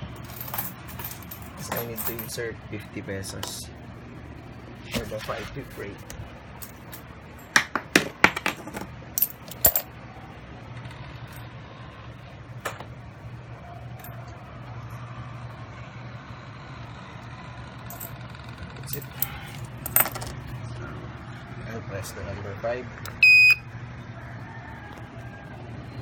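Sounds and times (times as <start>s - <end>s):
metal coins clinking: 0.0s - 2.4s, 6.6s - 9.9s, 17.9s - 18.2s, 18.9s - 20.5s.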